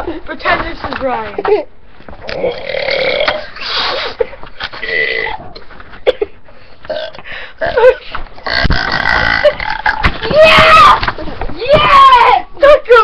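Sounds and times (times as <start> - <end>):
boy burping: 2.3 - 3.6, 4.8 - 5.6, 6.9 - 10.1.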